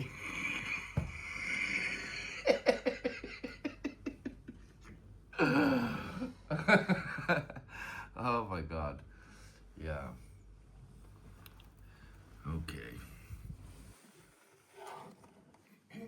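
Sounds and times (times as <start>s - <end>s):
person laughing hard: 0.0s - 4.5s.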